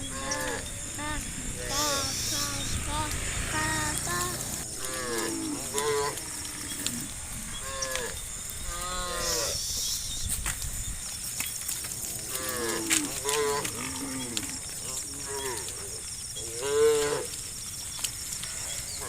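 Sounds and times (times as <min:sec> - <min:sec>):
cattle mooing: 0:00.0 - 0:09.6, 0:12.1 - 0:17.4.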